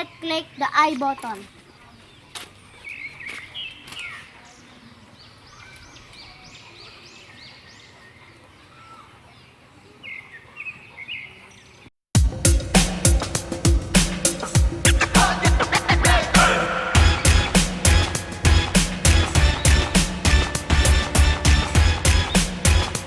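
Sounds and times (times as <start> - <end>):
birds chirping: 0.0 - 11.9, 14.6 - 23.0
outdoor background noise: 0.0 - 11.9.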